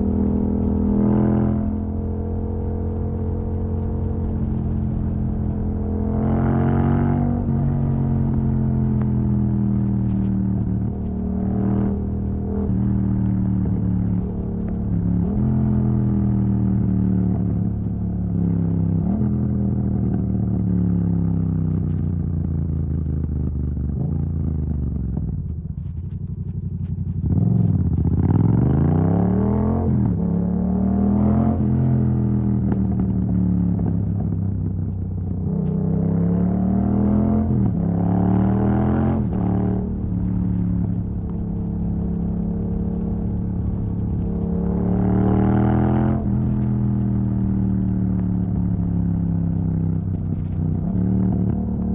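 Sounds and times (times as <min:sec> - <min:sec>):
motorcycle engine accelerating: 0:00.0 - 0:51.9.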